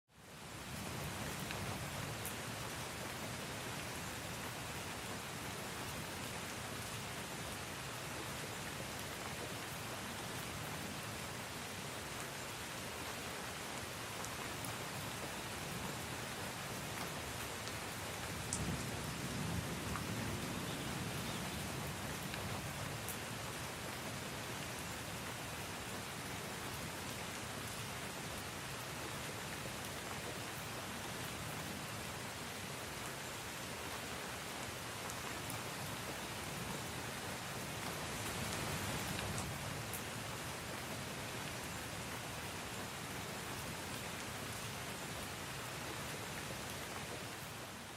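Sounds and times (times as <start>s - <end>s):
steady rain hiss: 0.1s - 47.9s
raindrops ticking close by: 12.4s - 32.0s, 32.8s - 44.6s.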